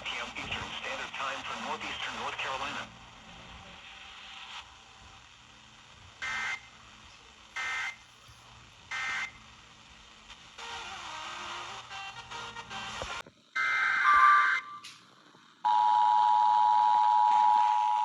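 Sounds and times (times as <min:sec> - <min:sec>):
radio hiss: 0:00.0 - 0:13.5.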